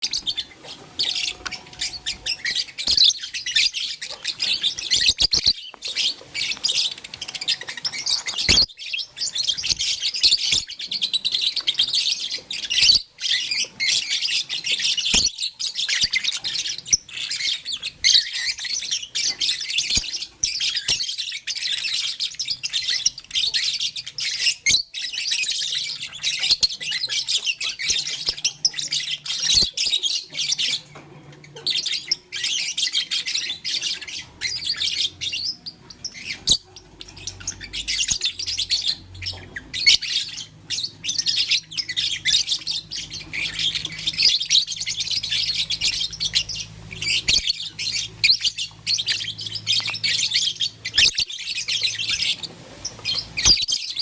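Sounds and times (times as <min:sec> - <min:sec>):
birds chirping high-pitched: 0:00.0 - 0:54.0.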